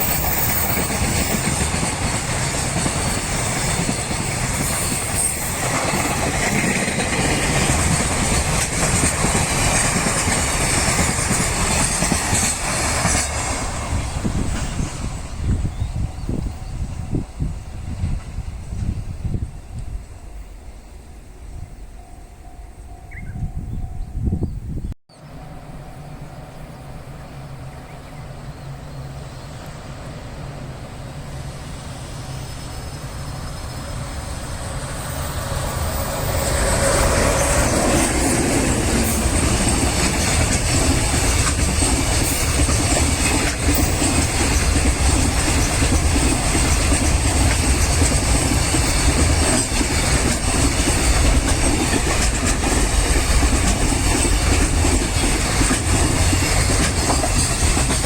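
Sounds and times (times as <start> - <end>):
wheels clattering over rail joints: 0.0 - 14.9, 33.2 - 58.0
freight train passing: 0.0 - 58.0.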